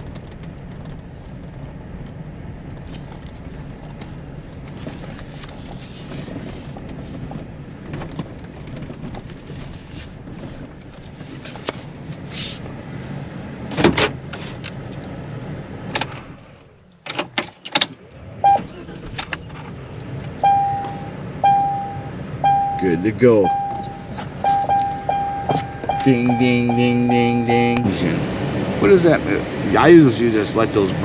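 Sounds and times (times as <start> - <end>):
road and engine rumble: 0.0 - 31.0
dashboard warning chime: 20.4 - 28.0
knocks and clicks: 23.5 - 26.8.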